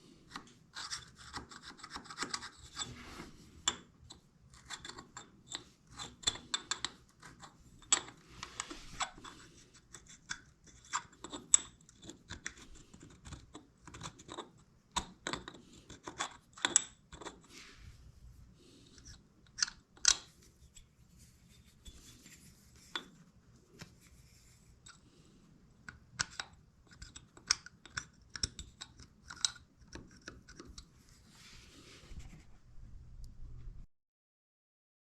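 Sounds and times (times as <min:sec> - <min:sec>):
light scraping: 0:02.7 - 0:03.7, 0:20.3 - 0:24.8.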